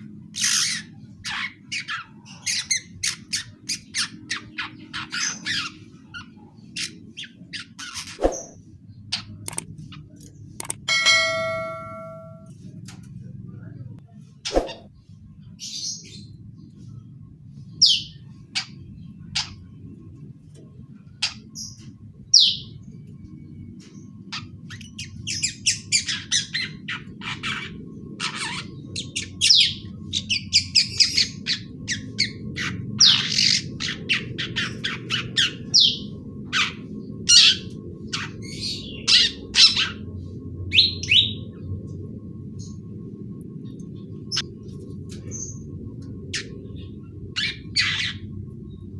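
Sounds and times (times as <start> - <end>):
bird chattering and singing: 0.0 - 12.4, 17.7 - 20.0, 21.1 - 23.0, 23.8 - 41.7, 43.6 - 48.9.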